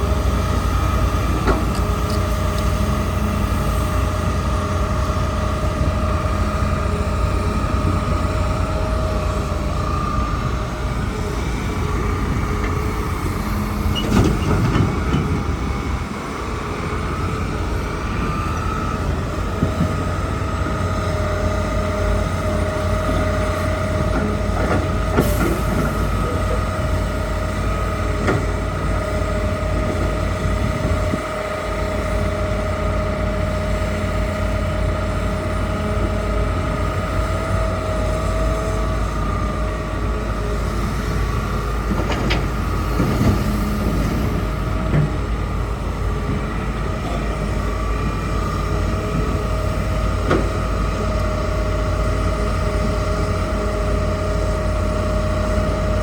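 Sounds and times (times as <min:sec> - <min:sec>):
excavator engine whining under load: 0:00.0 - 0:56.0.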